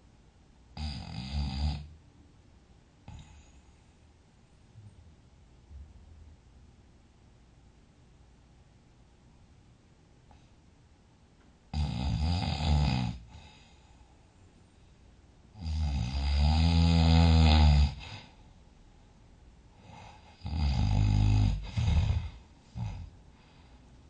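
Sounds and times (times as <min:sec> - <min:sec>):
person snoring loudly: 0:11.7 - 0:13.3, 0:15.6 - 0:18.2, 0:20.4 - 0:23.0.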